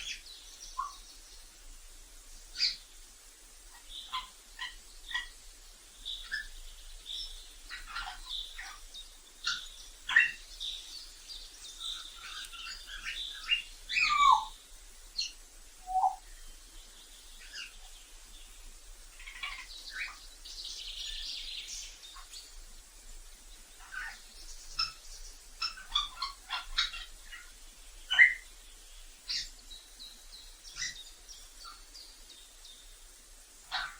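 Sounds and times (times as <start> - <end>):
parrot chirps and whistles: 15.8 - 16.2.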